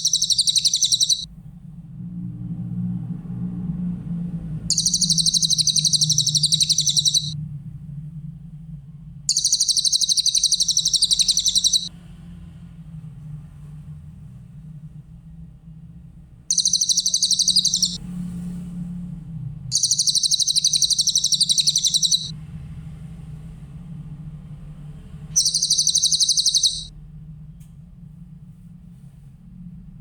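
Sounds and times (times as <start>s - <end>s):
bird buzzy trills: 0.0s - 1.3s, 4.7s - 7.4s, 9.3s - 11.9s, 16.5s - 18.0s, 19.7s - 22.3s, 25.4s - 26.9s
steady low hum: 0.0s - 1.3s, 8.0s - 11.9s, 19.7s - 22.3s.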